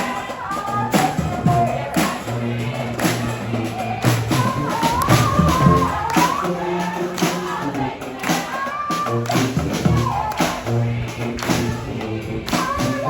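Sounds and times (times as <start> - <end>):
low bass line: 9.2 - 13.0.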